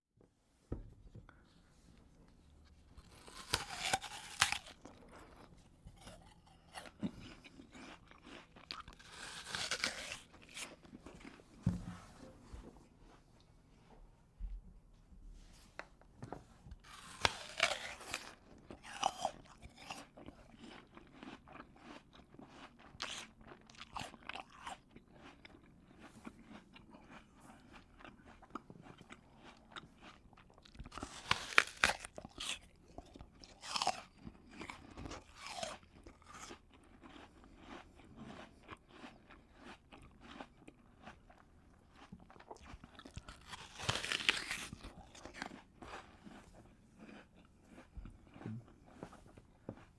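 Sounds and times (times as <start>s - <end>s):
crunchy chewing: 2.3s - 11.7s, 16.7s - 49.9s
person biting crisp apple: 2.8s - 11.9s, 16.8s - 22.0s, 26.5s - 40.5s, 41.3s - 49.1s.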